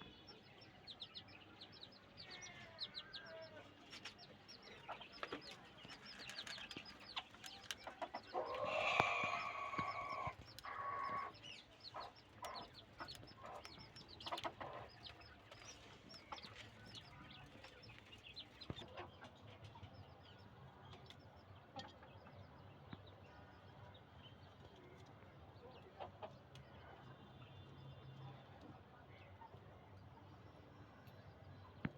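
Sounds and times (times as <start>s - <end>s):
chicks peeping: 0.2s - 27.0s
hen clucking: 4.8s - 19.4s.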